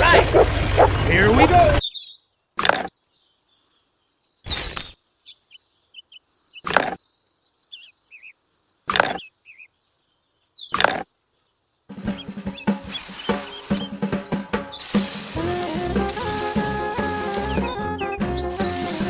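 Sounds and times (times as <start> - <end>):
birds chirping and trilling: 0.0 - 19.0
loud short noise bursts: 12.0 - 19.0.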